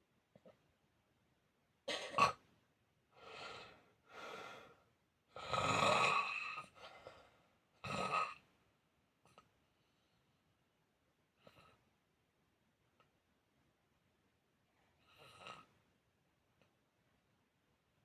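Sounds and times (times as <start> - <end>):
snoring: 5.4 - 6.8, 7.8 - 8.4, 15.0 - 15.8.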